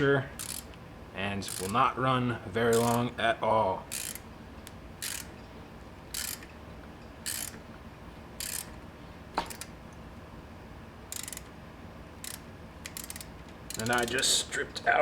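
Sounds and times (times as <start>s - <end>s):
ratchet wrench clicking: 0.4s - 0.8s, 1.4s - 1.8s, 2.7s - 3.1s, 3.9s - 5.4s, 6.1s - 6.5s, 7.2s - 7.6s, 8.4s - 8.8s, 9.4s - 9.7s, 11.1s - 11.5s, 12.2s - 14.3s.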